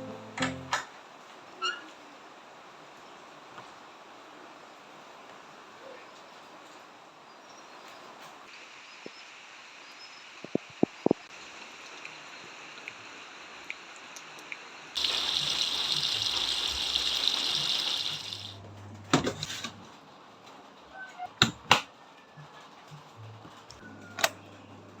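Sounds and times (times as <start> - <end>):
water running from tap: 13.6 - 18.6.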